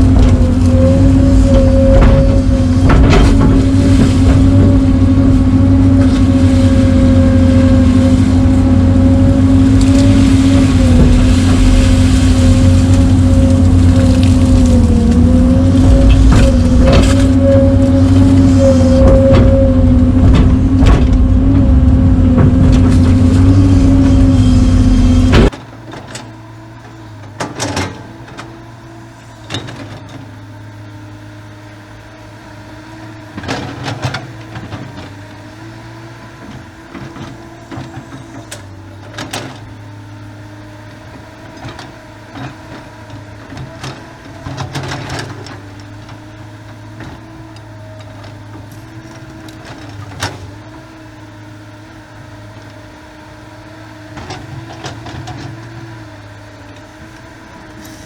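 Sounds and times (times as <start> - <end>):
metallic knocks and clanks: 0.0 - 5.2, 14.2 - 25.5
diesel engine running: 0.0 - 58.0.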